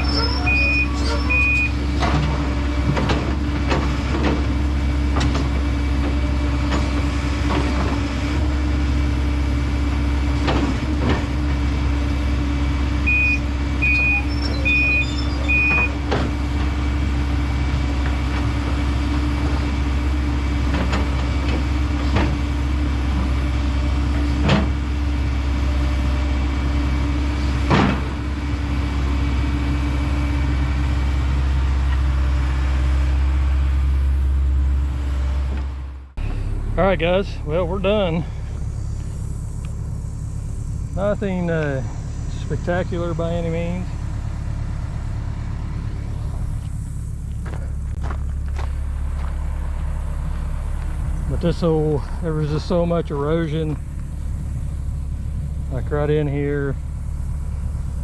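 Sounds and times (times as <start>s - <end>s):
backup alarm beeping: 0.0s - 1.8s, 13.0s - 16.0s
excavator diesel engine running: 0.0s - 58.0s.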